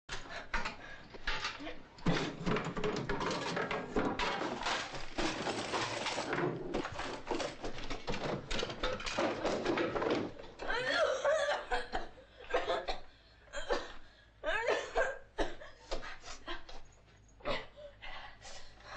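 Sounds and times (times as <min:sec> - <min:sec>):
woman coughing: 0:10.8 - 0:15.8.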